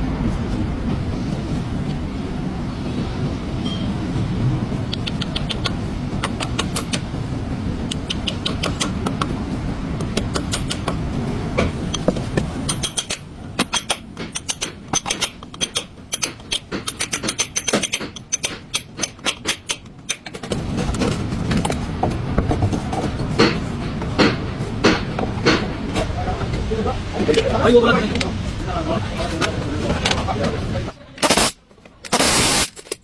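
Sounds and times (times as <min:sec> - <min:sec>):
hand tools clinking against metal: 0:11.9 - 0:20.5.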